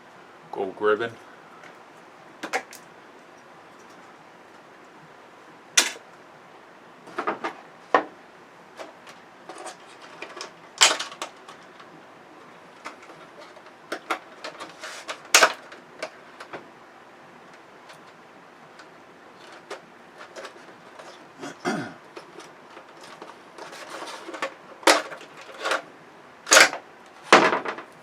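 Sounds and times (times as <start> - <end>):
clicks and knocks of parts handled: 2.4 - 2.9, 5.8 - 6.0, 8.8 - 11.9, 12.7 - 16.7, 17.5 - 21.3, 22.1 - 25.9, 26.5 - 28.0
cables rustling: 8.6 - 28.0.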